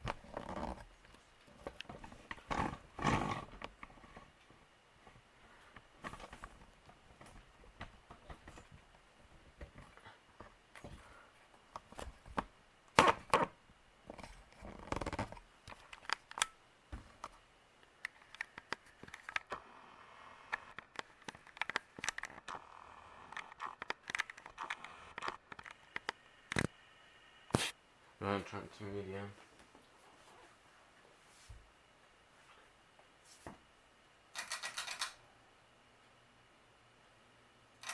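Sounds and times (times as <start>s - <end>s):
ceiling fan whine: 0.0s - 37.9s
sharp clicks and cracks: 14.8s - 16.6s, 17.2s - 19.7s, 20.4s - 22.7s, 23.3s - 26.8s.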